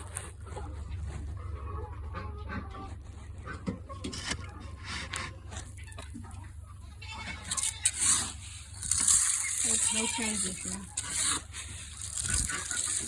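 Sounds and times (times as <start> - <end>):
rustling scrape: 0.0 - 2.2, 2.8 - 6.5, 7.2 - 13.0
chickens clucking: 0.0 - 13.0
chickens pecking: 0.0 - 13.0.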